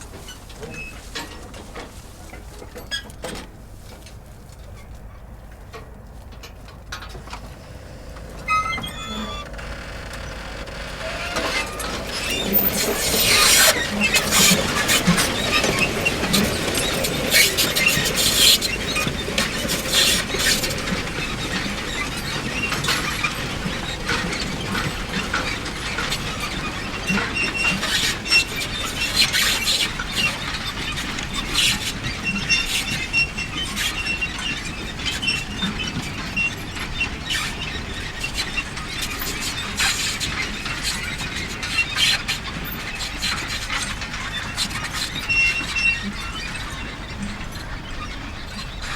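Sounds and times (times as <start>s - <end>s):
manure spreader clattering: 6.3s - 32.8s
high squeaks: 7.2s - 20.9s.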